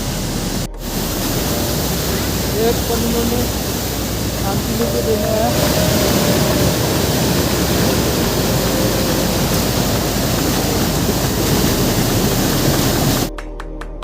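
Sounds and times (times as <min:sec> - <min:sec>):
waterfall rushing: 0:00.0 - 0:13.3
music with ticking beat: 0:04.6 - 0:14.0.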